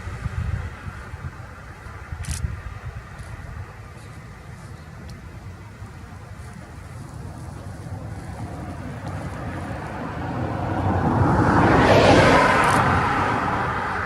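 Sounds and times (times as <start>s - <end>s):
vehicle passing by: 6.4s - 14.0s.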